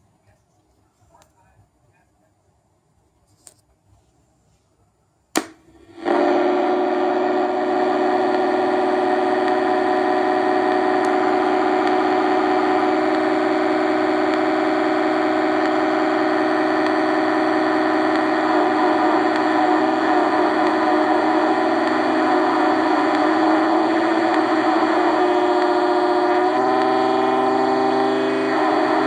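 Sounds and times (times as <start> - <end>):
sharp click: 5.4 - 5.7
synthesizer drone: 5.5 - 29.0.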